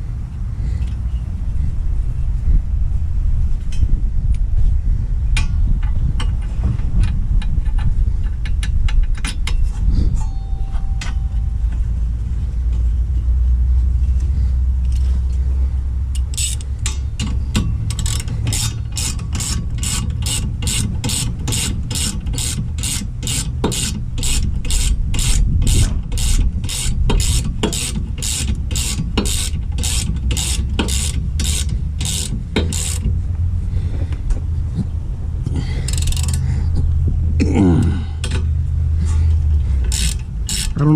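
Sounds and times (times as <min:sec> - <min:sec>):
steady low rumble: 0:00.0 - 0:40.9
metal clinking on metal: 0:10.2 - 0:11.8
hand ratchet clicking: 0:16.1 - 0:33.2, 0:35.8 - 0:36.4, 0:39.8 - 0:40.9.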